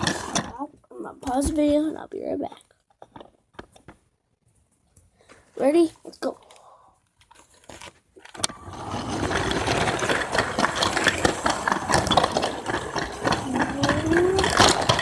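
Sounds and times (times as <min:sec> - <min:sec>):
toy train motor: 0:00.0 - 0:00.6, 0:08.4 - 0:15.0
toy train clattering on track: 0:00.0 - 0:01.4, 0:08.3 - 0:15.0.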